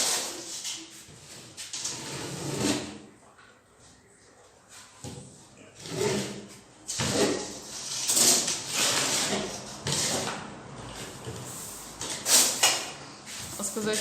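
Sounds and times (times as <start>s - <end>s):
putty knife scraping drywall: 0.0s - 3.1s, 5.8s - 14.0s.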